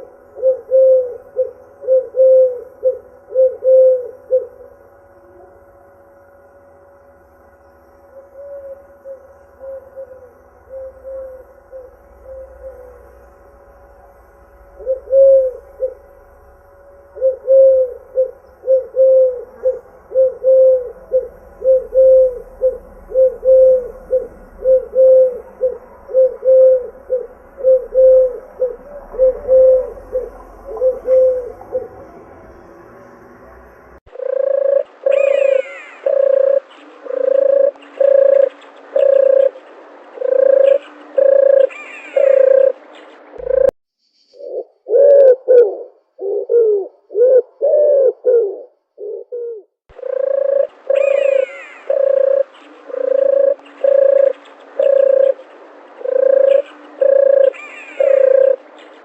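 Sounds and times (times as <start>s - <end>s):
doves cooing: 0.0s - 5.5s, 8.1s - 13.2s, 14.6s - 32.4s, 34.1s - 43.8s, 44.4s - 59.0s
bird chirping: 17.1s - 33.0s, 34.1s - 45.1s, 50.0s - 59.0s.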